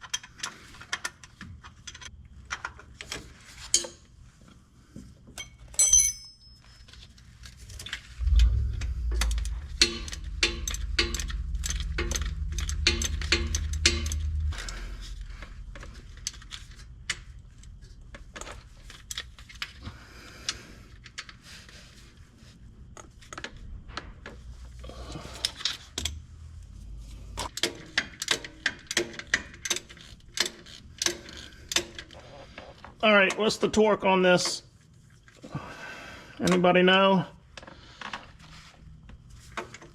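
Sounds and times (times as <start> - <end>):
metal clinks of hand tools: 5.4 - 6.9
low rumble: 8.0 - 18.1
ratchet clicking: 8.2 - 17.2.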